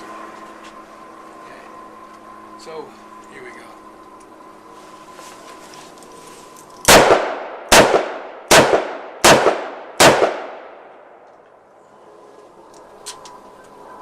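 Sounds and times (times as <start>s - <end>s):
revolver shots with ringing echo: 6.9s - 11.2s.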